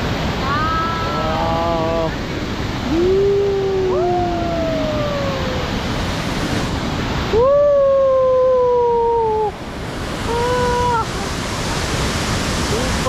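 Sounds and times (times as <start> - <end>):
waterfall rushing: 0.0 - 13.0
long howling calls: 2.8 - 5.8.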